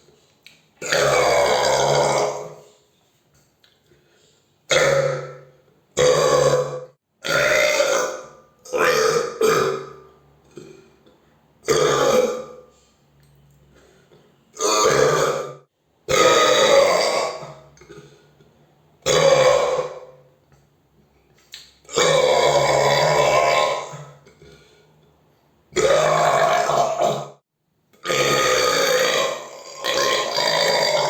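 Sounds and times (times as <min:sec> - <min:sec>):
person burping loudly: 0:00.8 - 0:02.6, 0:04.7 - 0:12.7, 0:14.5 - 0:18.2, 0:19.0 - 0:20.3, 0:21.9 - 0:24.8, 0:25.7 - 0:27.4, 0:28.0 - 0:31.0.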